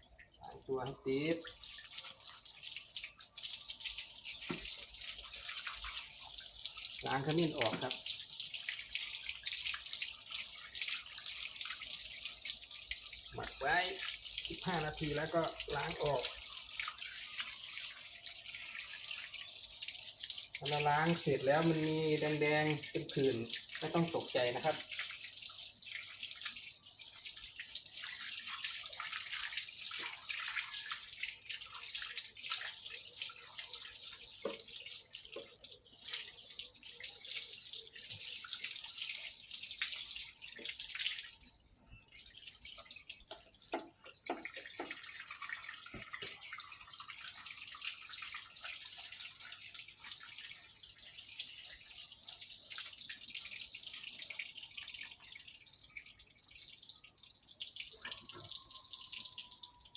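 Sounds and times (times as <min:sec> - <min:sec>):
running water rinsing: 0:00.0 - 0:59.9
light splashes and knocks: 0:04.4 - 0:04.8, 0:34.3 - 0:35.6, 0:43.2 - 0:46.5.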